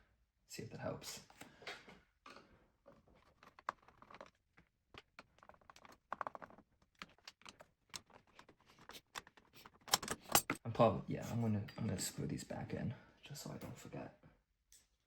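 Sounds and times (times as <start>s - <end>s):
screwdriver and screws clicking: 9.2s - 10.6s.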